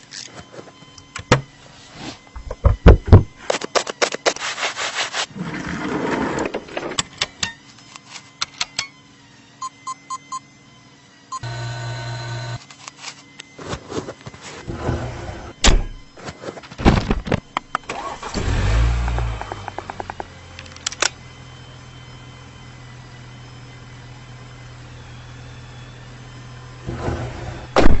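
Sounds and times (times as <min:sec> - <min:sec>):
car engine starting and idling: 0:17.7 - 0:21.6.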